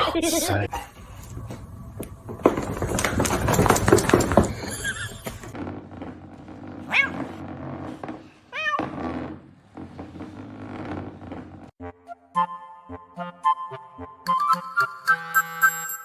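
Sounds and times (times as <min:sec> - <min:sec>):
loud clattering and thumps: 0:00.7 - 0:11.7
cat meowing: 0:06.9 - 0:07.3, 0:08.5 - 0:08.9.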